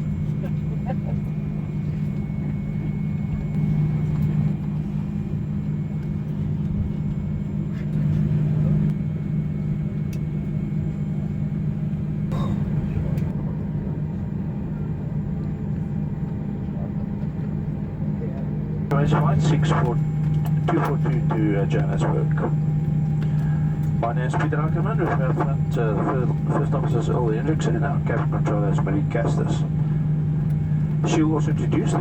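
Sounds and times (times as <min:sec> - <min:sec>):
airplane cabin drone: 0:00.0 - 0:32.0.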